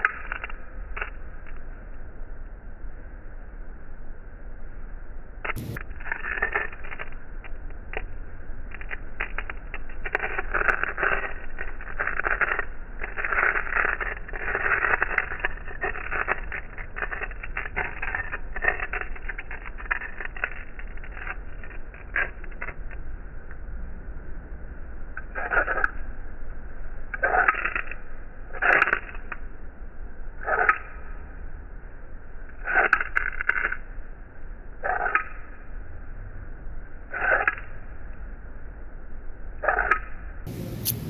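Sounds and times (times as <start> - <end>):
flint and steel striking: 5.5 - 7.1.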